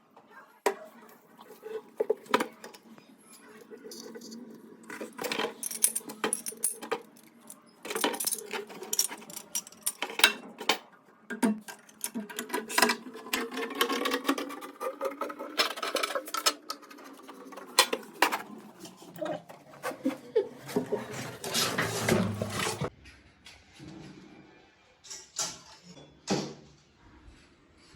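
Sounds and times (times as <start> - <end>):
small hard objects clinking: 3.9 - 10.8.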